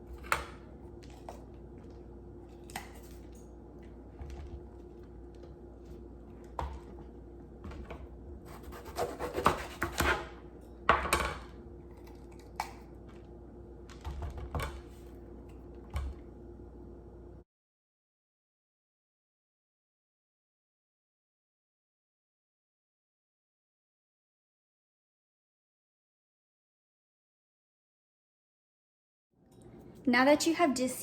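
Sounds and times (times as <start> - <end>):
faint steady hum: 0.0 - 17.4
knife on cutting board: 8.5 - 10.4.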